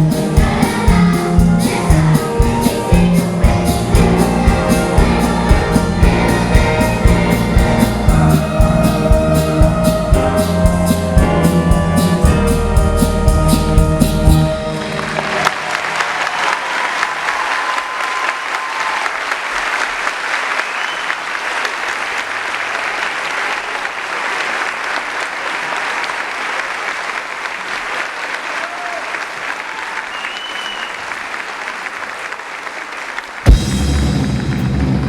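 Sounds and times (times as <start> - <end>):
live band with drum beat: 0.0 - 15.5, 33.5 - 35.0
audience applauding: 1.7 - 11.2, 14.4 - 35.0.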